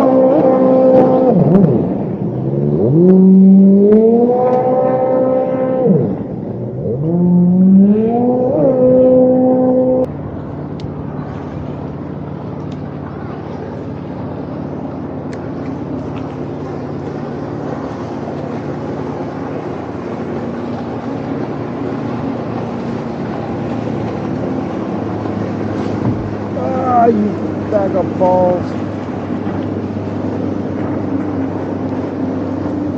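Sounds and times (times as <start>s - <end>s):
jet ski engine revving: 0.0s - 32.9s
steady rushing noise: 8.2s - 32.9s.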